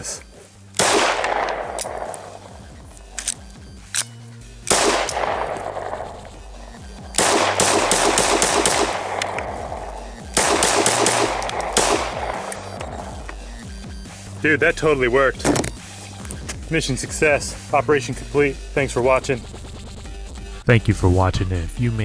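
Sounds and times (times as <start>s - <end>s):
background music: 0.0s - 22.0s
pistol gunshots with echo: 0.8s - 3.4s, 4.0s - 13.4s.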